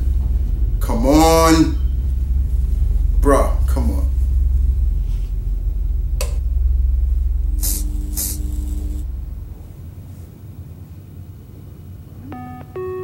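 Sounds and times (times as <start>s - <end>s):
deep rumbling drone: 0.0s - 12.1s
faint hum: 0.0s - 13.0s
hissing bursts: 7.6s - 9.1s.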